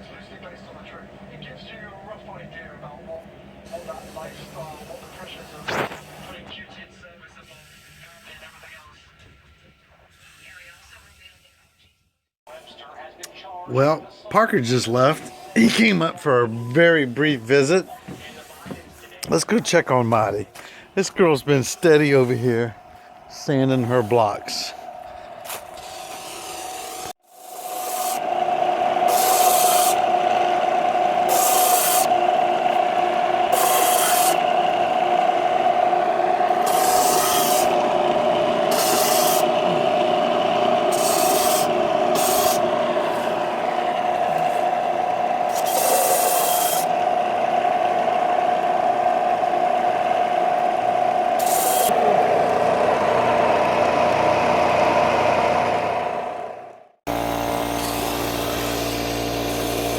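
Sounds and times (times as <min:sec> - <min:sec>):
sandpaper grinding wood: 0:07.5 - 0:08.8, 0:14.6 - 0:20.2, 0:21.0 - 0:47.1, 0:51.4 - 0:52.4, 0:57.1 - 0:59.9
electric sander running: 0:21.8 - 0:59.9.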